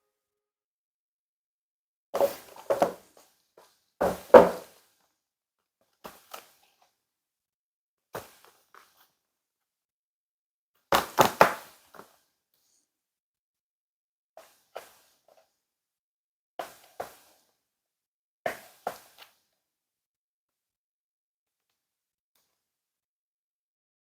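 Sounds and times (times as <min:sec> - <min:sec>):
handling knocks and thunks: 0:04.0 - 0:04.6.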